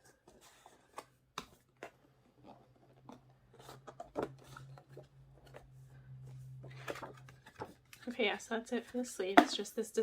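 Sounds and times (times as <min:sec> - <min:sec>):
paper and cardboard handled: 0:00.0 - 0:09.2.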